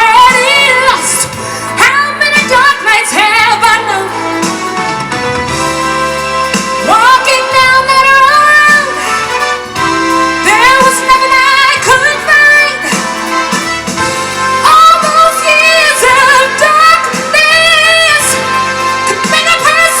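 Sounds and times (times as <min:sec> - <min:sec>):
woman singing soul ballad: 0:00.0 - 0:04.3, 0:06.8 - 0:09.4, 0:10.3 - 0:13.2, 0:14.6 - 0:20.0
instrumental accompaniment: 0:00.0 - 0:20.0.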